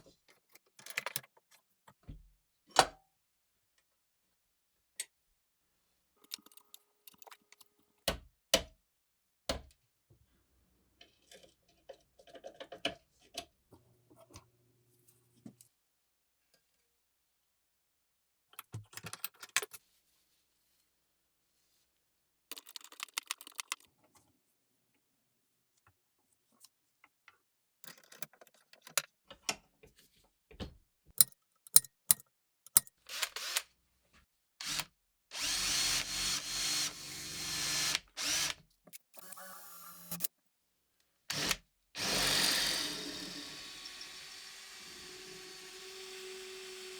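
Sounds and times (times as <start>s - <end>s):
hand tools clicking and knocking: 31.2s - 32.9s.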